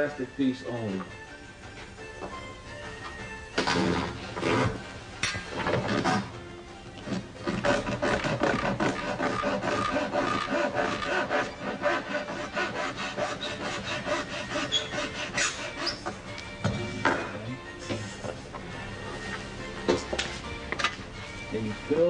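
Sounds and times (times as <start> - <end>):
hacksaw cutting plastic: 3.6 - 4.8, 5.5 - 6.3, 7.0 - 16.2.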